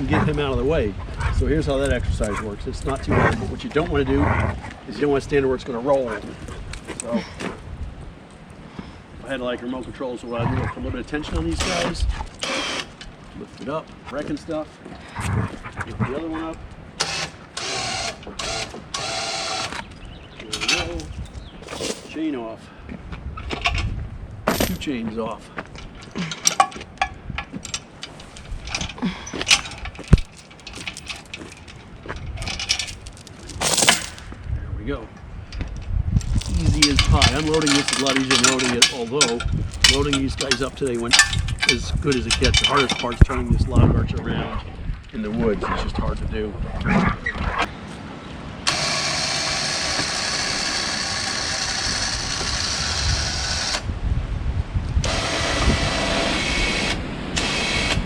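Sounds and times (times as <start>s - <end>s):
metal chains clinking: 20.6s - 22.2s, 24.5s - 24.9s, 27.6s - 34.3s, 36.2s - 43.2s.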